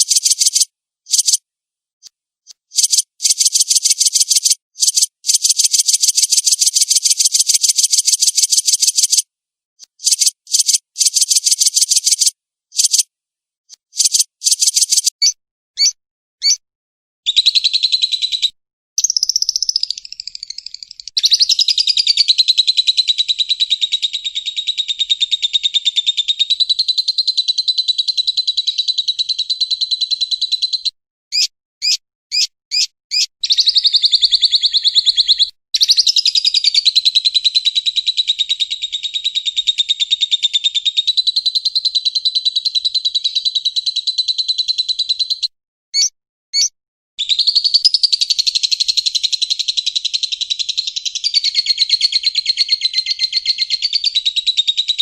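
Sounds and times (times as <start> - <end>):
lovebird trilling chatter: 0.0 - 1.4, 2.7 - 9.2, 10.0 - 13.0, 13.9 - 15.1
single bird chirps: 0.0 - 1.4, 2.5 - 9.2, 9.8 - 13.1, 13.7 - 16.6, 45.1 - 48.3.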